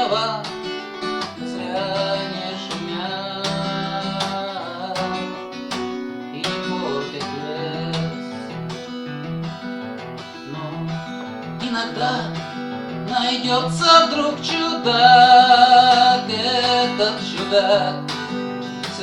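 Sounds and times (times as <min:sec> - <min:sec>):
acoustic guitar strumming: 0:00.0 - 0:19.0.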